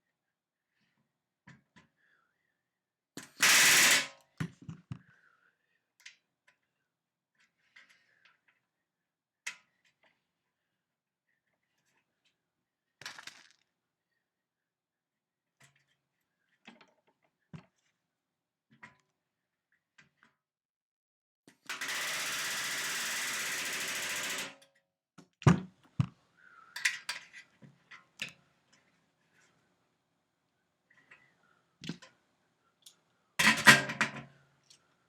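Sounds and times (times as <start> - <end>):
small clicks and taps: 31.8 - 32.2.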